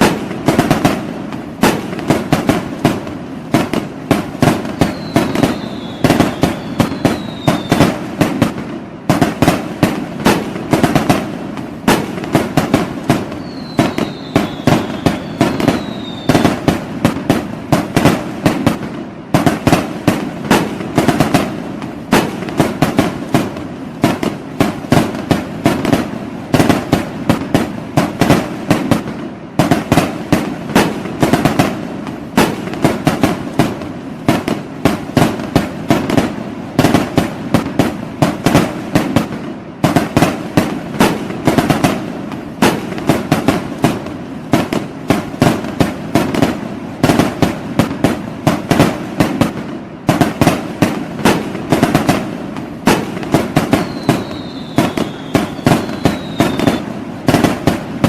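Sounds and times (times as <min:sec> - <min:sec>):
fireworks banging: 0:00.0 - 0:58.0
firework whistles falling in pitch: 0:04.5 - 0:08.0, 0:13.2 - 0:16.7, 0:53.6 - 0:56.9.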